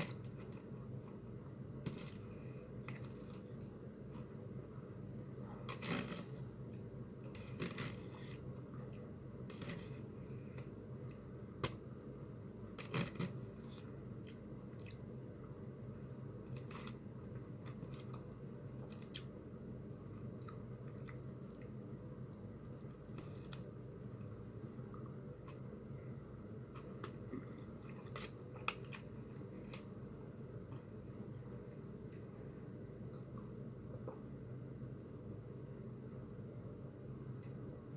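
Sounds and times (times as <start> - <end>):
steady low hum: 0.0 - 37.9
chewing and mouth sounds: 14.2 - 15.1, 20.3 - 21.8.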